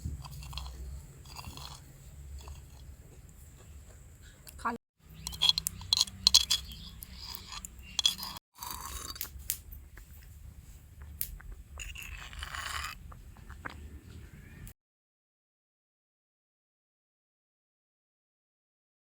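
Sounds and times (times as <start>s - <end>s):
tiny cookware clinking and scraping: 0.0s - 4.4s, 5.1s - 13.7s.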